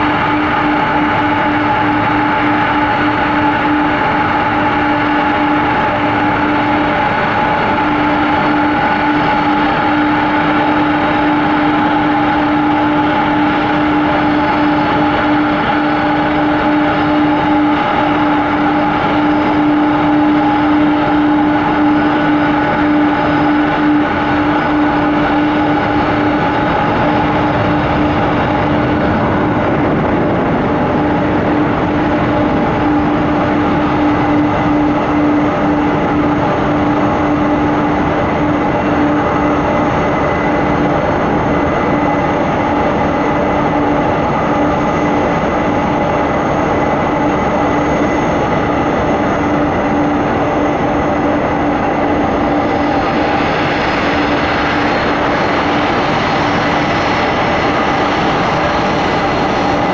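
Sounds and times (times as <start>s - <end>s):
jet engines whining: 0.0s - 59.9s.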